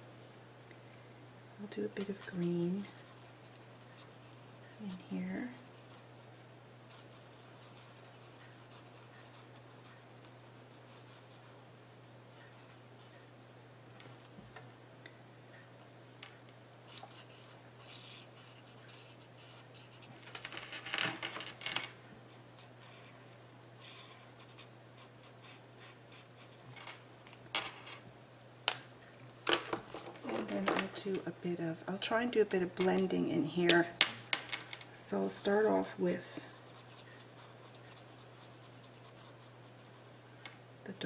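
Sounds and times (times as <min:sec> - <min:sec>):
marker scratching on card: 0:16.9 - 0:20.1, 0:23.8 - 0:26.7.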